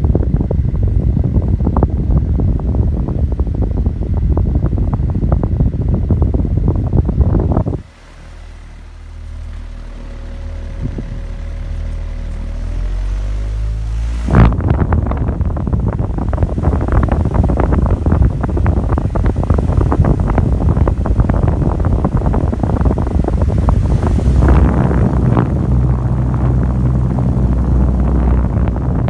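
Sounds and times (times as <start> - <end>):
fan motor hum: 0.0 - 29.0
fan wind buffeting microphone: 0.0 - 29.0
rising whine: 6.2 - 29.0.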